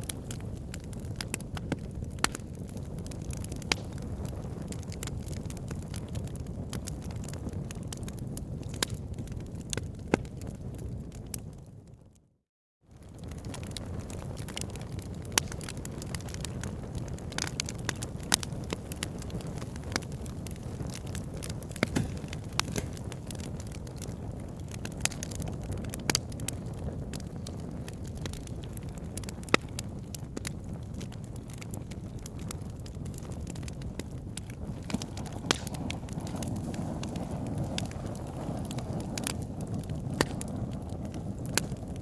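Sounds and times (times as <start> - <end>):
campfire rumble and hiss: 0.0 - 12.2, 12.9 - 42.0
fire crackling and popping: 0.0 - 12.2, 12.9 - 42.0.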